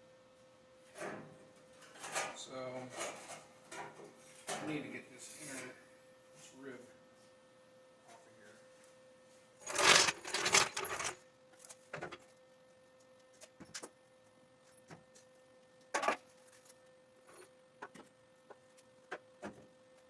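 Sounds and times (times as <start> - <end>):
metal tools clattering: 9.6 - 11.2.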